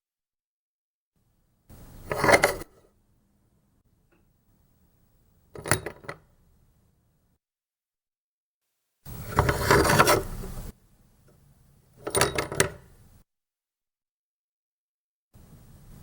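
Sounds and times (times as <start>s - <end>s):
peephole cover scraping: 9.1s - 10.7s.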